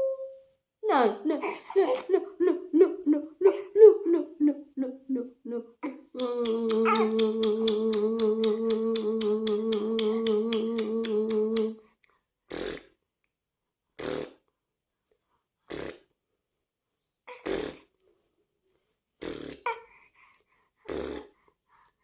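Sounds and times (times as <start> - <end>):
person's voice pulsing: 0.9 - 11.7.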